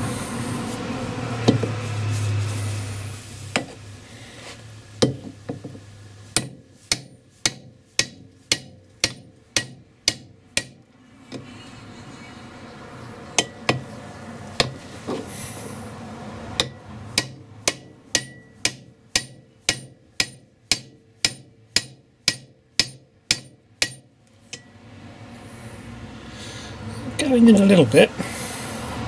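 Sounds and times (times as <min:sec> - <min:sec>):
hammer tapping metal stud: 0:06.4 - 0:10.8, 0:16.6 - 0:24.7.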